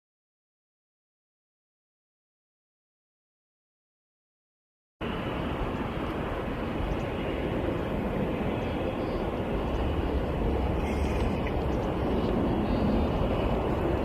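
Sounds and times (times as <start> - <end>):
distant jet engine rumble: 5.0 - 14.0.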